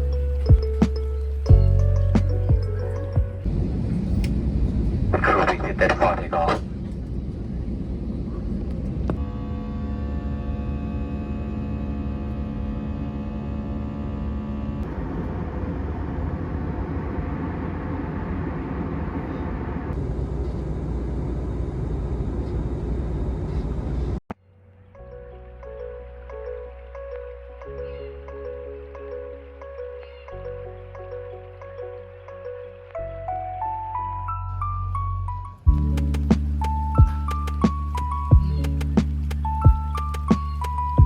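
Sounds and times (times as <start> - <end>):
multi-tone hum: 0.0 - 25.3
vehicle engine rumble: 0.0 - 41.0.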